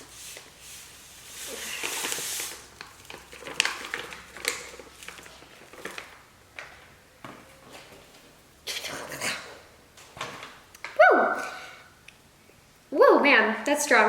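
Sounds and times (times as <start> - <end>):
powder pouring into a bowl: 0.0 - 6.6
plastic bag taps and rustles: 1.8 - 7.5, 10.0 - 11.0.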